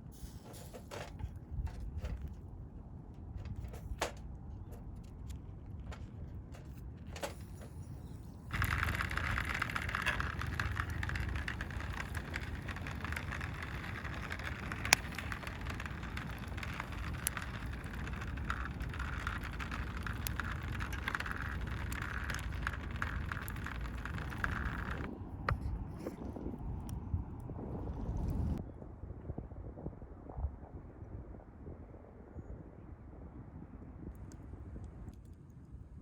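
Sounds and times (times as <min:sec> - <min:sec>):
wood fire crackling: 0:07.2 - 0:25.1
low rumble: 0:08.0 - 0:32.3.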